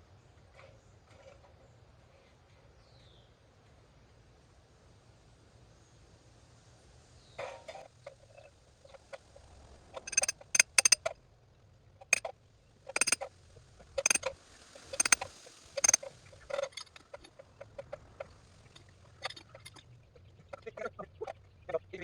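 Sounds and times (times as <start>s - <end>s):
light ticks: 10.1s - 11.0s
sledgehammer striking metal pin: 10.1s - 11.0s, 13.0s - 13.2s.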